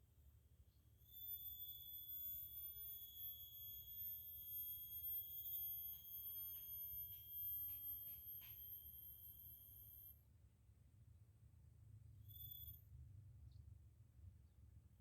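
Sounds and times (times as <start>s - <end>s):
insect high-pitched trill: 1.0s - 10.2s.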